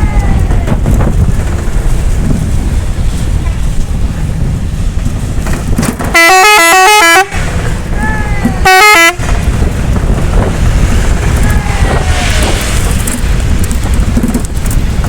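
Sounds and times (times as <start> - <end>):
engine and road rumble: 0.0 - 15.0
musical bus horn warble: 6.1 - 7.6, 8.6 - 9.4.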